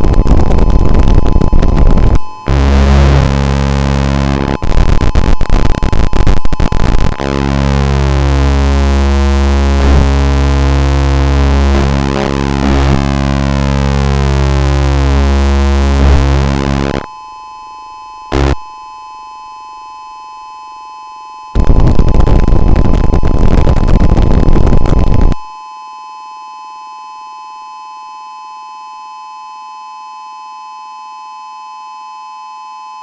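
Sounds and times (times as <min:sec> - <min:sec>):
clashing electronic tones: 0:00.0 - 0:17.1, 0:18.3 - 0:18.7
harsh synthesized noise: 0:00.0 - 0:17.1, 0:18.3 - 0:18.6, 0:21.6 - 0:25.4
loud static noise: 0:00.0 - 0:17.1, 0:18.3 - 0:18.7, 0:21.6 - 0:25.5
steady electronic tone: 0:00.0 - 0:17.2, 0:18.2 - 0:18.8, 0:21.6 - 0:25.4.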